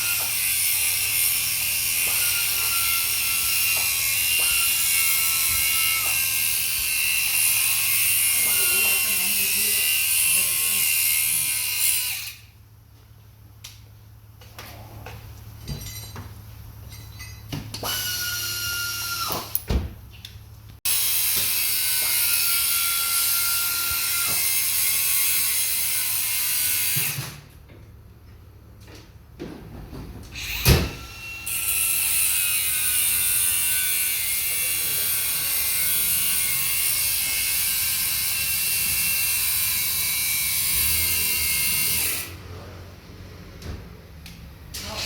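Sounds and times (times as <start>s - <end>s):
power tool whining: 0.0s - 12.5s, 17.8s - 19.6s, 30.4s - 42.4s.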